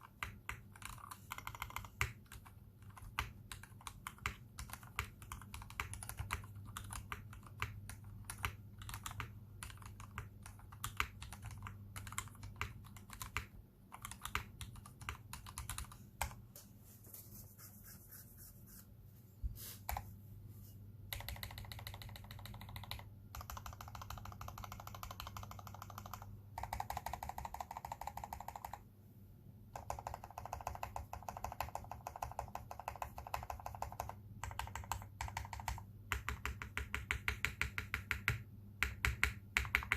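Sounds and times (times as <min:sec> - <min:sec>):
typing on mechanical keyboard: 0:00.0 - 0:16.4, 0:21.1 - 0:28.8, 0:29.7 - 0:39.9.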